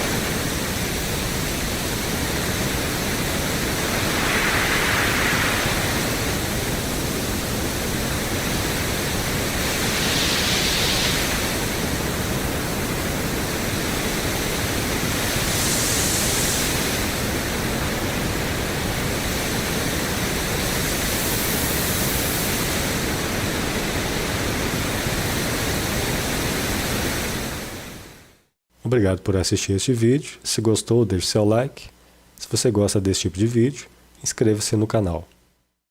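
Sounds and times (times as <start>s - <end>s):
pink noise hiss: 0.0s - 28.3s.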